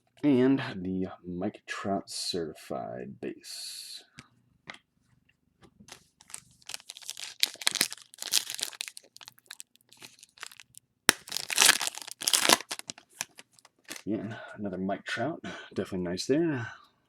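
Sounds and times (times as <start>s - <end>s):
card pack wrapper crinkling and tearing: 6.2s - 14.0s.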